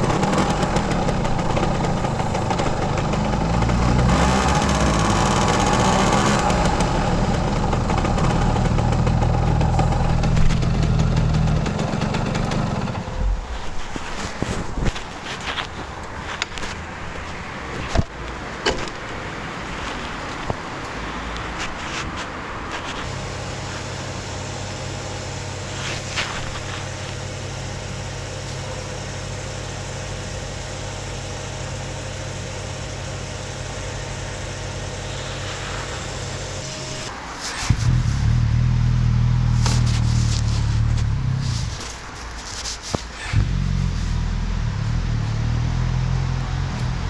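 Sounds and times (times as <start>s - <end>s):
two-stroke engine idling: 0.0s - 13.3s.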